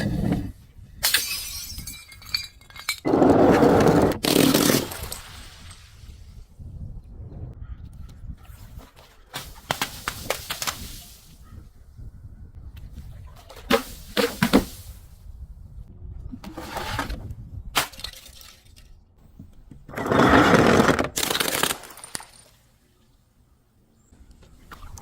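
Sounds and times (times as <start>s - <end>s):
glass bottle being crushed: 1.0s - 3.1s.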